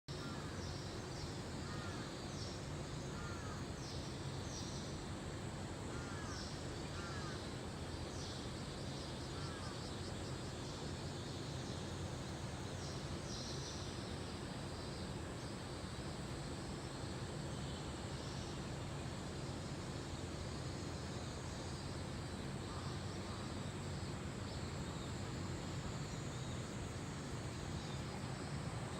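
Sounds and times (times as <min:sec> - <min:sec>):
birds calling: 0:03.1 - 0:03.8.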